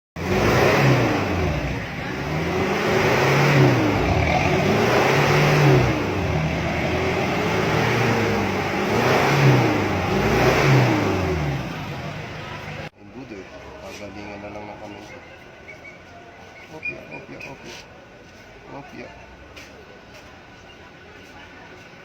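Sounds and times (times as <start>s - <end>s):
engine revving: 0.2s - 12.9s.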